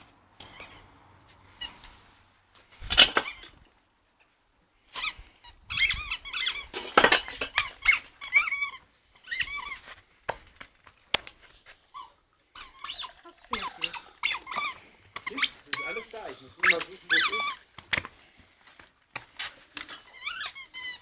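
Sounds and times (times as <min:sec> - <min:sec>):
squeaky dog toy squeaking: 0:05.0 - 0:09.8, 0:11.9 - 0:17.6, 0:20.1 - 0:21.0.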